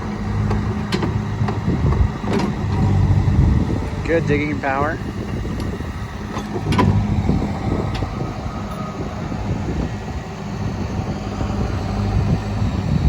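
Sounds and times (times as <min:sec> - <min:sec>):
diesel engine under load: 0:00.0 - 0:13.0.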